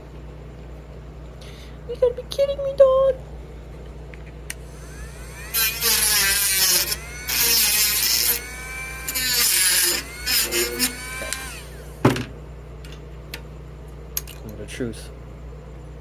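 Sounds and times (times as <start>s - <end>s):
electric drill whine: 4.6s - 12.3s.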